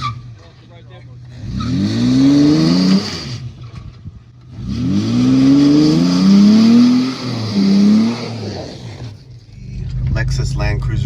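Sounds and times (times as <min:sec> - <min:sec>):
engine revving hard: 0:01.3 - 0:03.5, 0:04.5 - 0:09.2.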